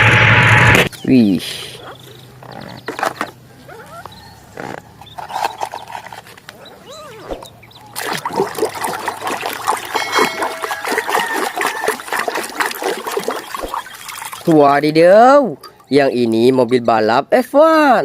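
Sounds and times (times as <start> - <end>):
scrubbing toy vehicle: 4.5 - 14.6
water splashing and trickling: 6.8 - 16.3.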